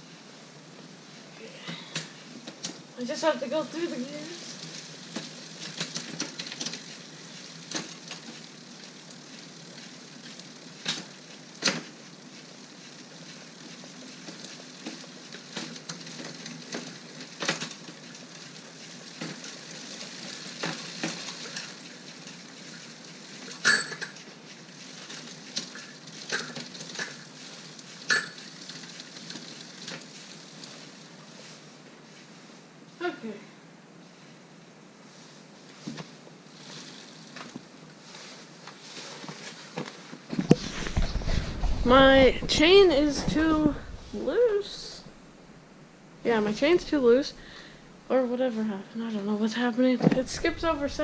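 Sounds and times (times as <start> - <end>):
bicycle chain running over sprockets: 1.8 - 31.6, 36.4 - 39.8.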